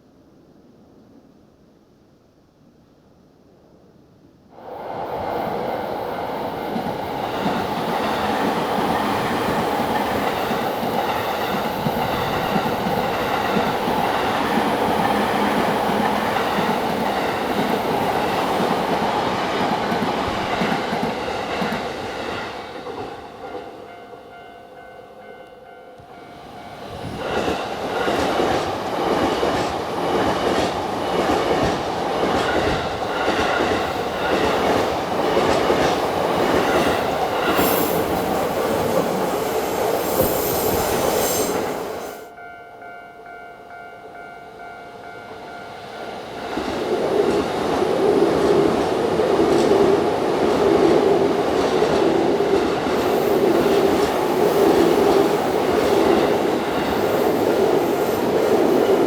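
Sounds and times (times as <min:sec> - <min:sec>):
train wheels clattering on rails: 0:05.8 - 0:23.7, 0:26.7 - 0:42.0, 0:46.3 - 0:59.0
level crossing warning bell: 0:42.3 - 0:46.1.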